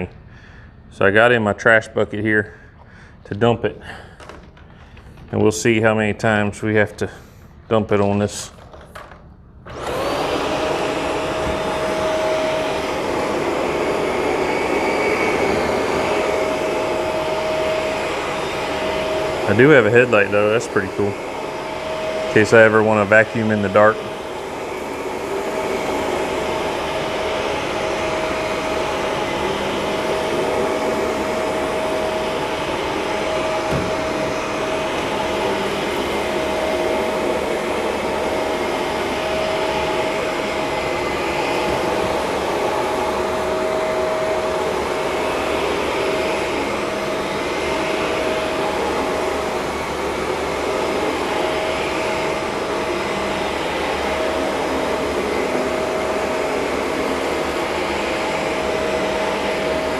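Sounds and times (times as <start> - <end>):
vacuum cleaner running: 0.0 - 59.9.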